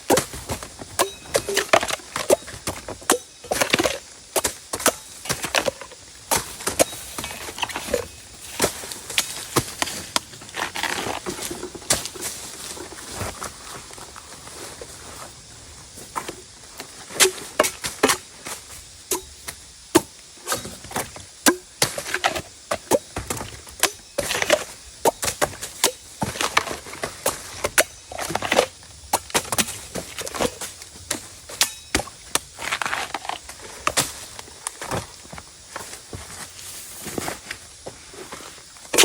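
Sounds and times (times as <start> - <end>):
blade chopping bamboo: 1.0 - 8.0, 21.5 - 30.4.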